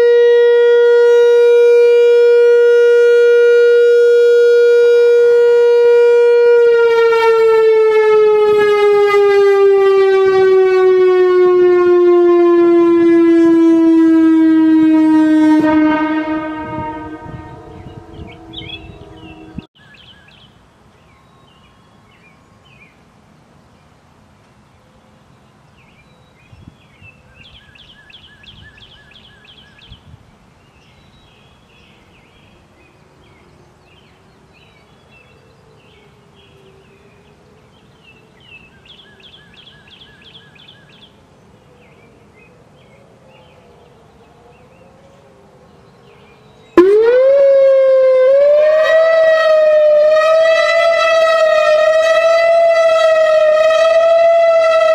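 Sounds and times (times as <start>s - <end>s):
tornado siren wailing: 0.0s - 19.7s, 46.8s - 54.9s
birdsong: 15.9s - 23.0s, 23.7s - 54.9s.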